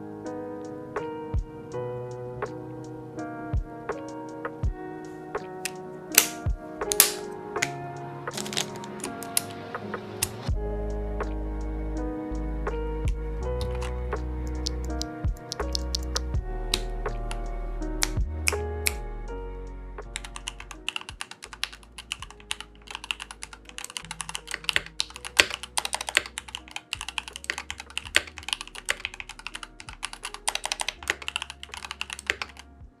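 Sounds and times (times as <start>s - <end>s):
background music: 0.0s - 33.0s
mechanical keyboard key clacks: 5.6s - 9.5s, 13.6s - 13.9s, 20.2s - 32.6s.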